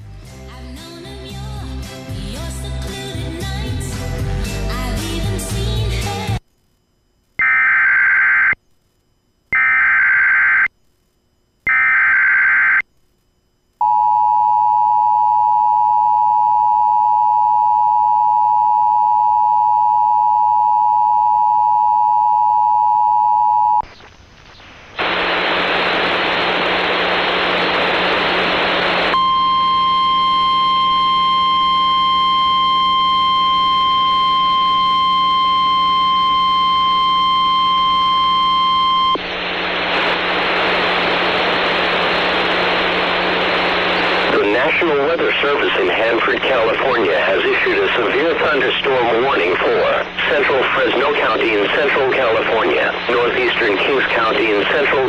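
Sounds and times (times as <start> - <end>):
radio static: 7.3 - 13.8, 23.7 - 55.0
steady alarm tone: 29.1 - 39.2.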